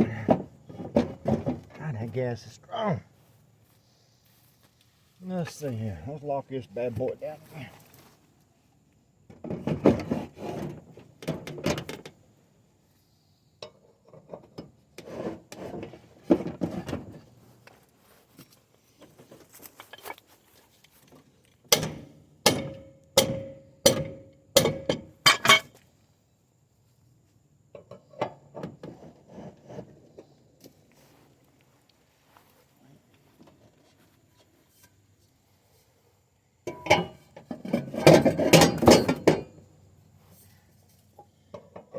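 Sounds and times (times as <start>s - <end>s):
steel tools clattering on metal: 24.6s - 25.7s, 36.7s - 39.6s.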